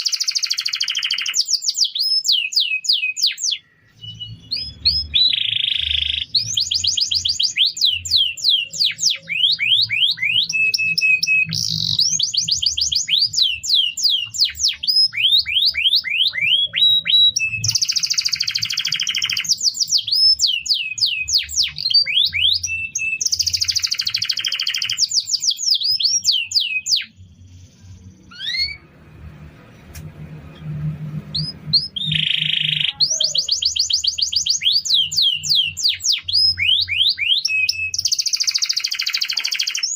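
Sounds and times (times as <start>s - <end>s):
canary singing: 0.0s - 29.8s, 30.4s - 39.9s
faint low hum: 25.8s - 37.1s.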